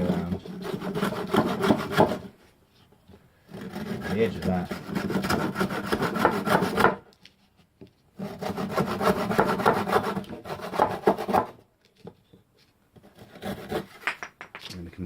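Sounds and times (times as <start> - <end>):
hand saw cutting wood: 0.0 - 2.3, 3.5 - 7.0, 8.2 - 11.6, 13.0 - 14.0.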